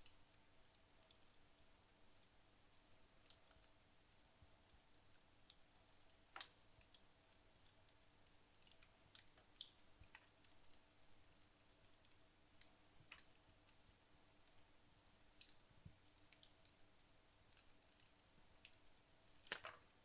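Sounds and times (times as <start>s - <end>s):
wood fire crackling: 0.0s - 20.0s.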